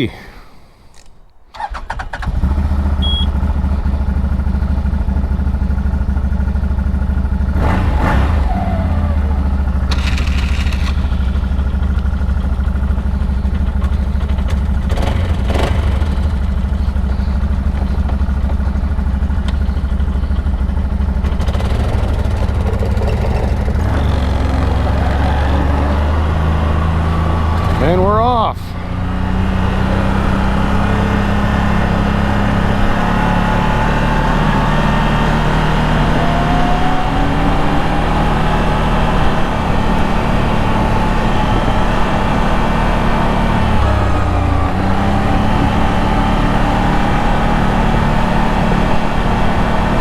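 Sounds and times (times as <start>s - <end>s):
atv engine idling: 1.5s - 7.6s, 8.5s - 29.1s.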